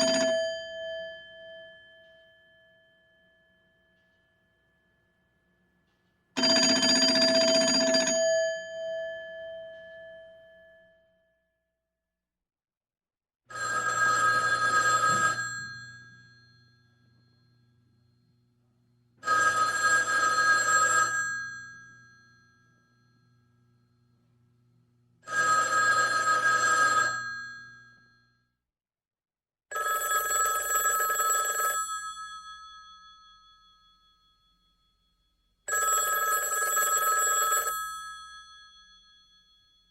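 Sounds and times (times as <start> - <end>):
old telephone bell ringing: 0.0 - 4.1, 6.0 - 10.9, 13.5 - 18.4, 19.2 - 24.0, 25.3 - 28.1, 29.7 - 34.8, 35.7 - 39.9.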